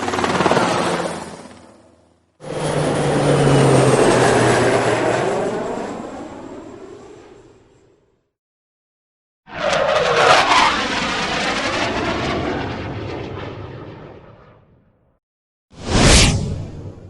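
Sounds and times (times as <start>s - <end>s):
loud rushing sound: 15.8s - 17.0s.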